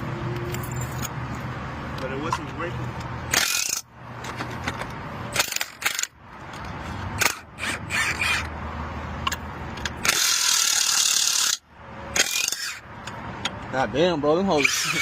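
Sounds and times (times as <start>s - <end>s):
ratchet clicks and rattles: 3.0s - 8.5s, 9.2s - 11.6s, 12.2s - 13.6s.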